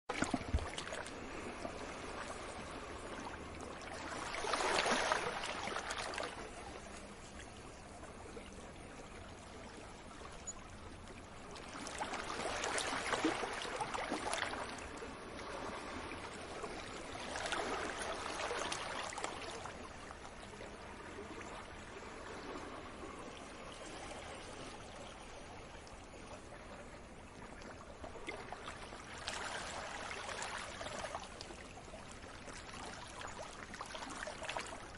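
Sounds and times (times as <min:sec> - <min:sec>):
sea waves breaking on beach: 0:00.1 - 0:06.6, 0:11.5 - 0:20.2, 0:28.1 - 0:31.5.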